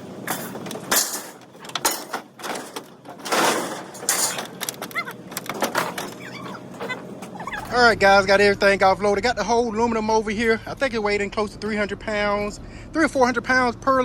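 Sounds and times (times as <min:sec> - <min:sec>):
scrap metal clattering onto pile: 0:00.0 - 0:07.3.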